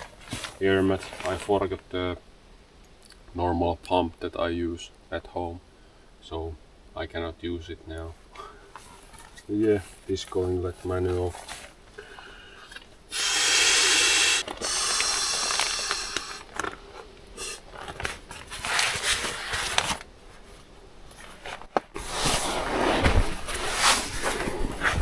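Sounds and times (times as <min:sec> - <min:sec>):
person blowing into air mattress: 0:13.1 - 0:16.5, 0:17.4 - 0:17.7.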